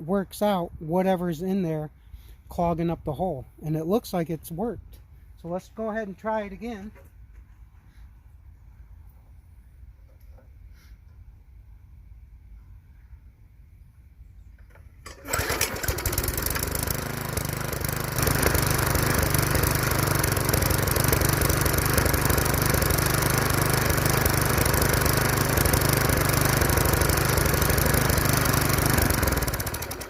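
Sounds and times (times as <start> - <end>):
small engine starting and running: 14.6 - 30.0.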